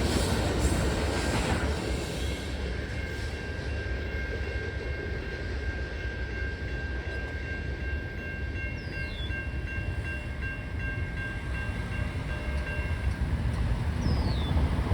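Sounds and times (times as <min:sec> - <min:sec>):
train rumbling past: 0:00.0 - 0:14.9
crossing bell ringing: 0:02.8 - 0:14.5.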